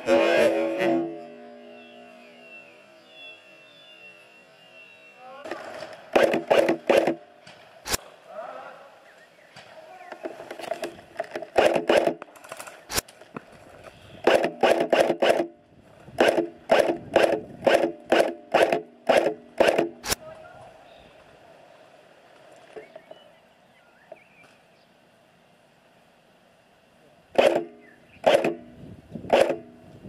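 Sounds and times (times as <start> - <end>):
airsoft rifle firing: 5.5 - 8.1, 11.3 - 13.1, 14.2 - 15.6, 16.2 - 20.2, 27.3 - 28.7, 29.3 - 29.7
sharp clicks: 6.1 - 7.2, 7.8 - 8.0, 10.1 - 13.2, 14.2 - 15.6, 16.2 - 20.2.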